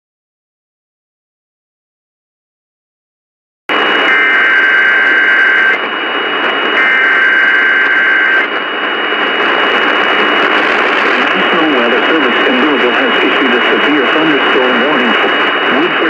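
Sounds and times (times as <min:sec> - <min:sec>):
radio static hiss: 0:03.7 - 0:16.0.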